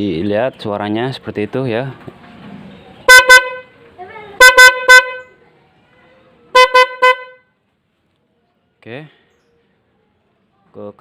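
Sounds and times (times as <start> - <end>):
loud horn toots: 3.1 - 3.7, 4.4 - 5.3, 6.6 - 7.5.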